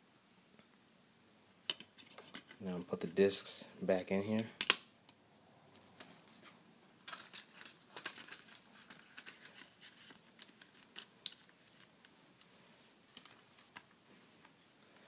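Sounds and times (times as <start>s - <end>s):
plastic rustling: 5.8s - 15.0s.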